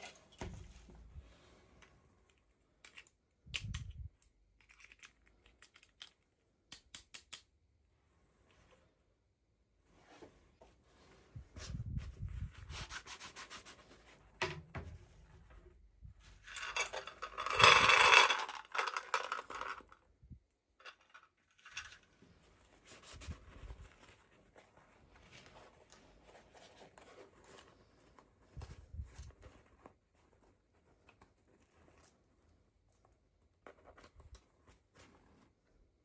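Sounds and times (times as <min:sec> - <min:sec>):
hands rustling toy packaging: 0:01.8 - 0:07.4, 0:16.3 - 0:20.2, 0:20.8 - 0:36.0.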